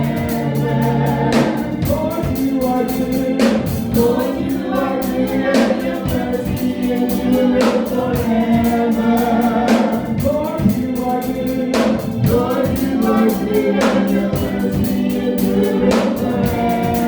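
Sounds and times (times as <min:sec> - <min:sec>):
choir singing held notes: 0:00.0 - 0:17.0
organ and band playing: 0:00.0 - 0:17.0.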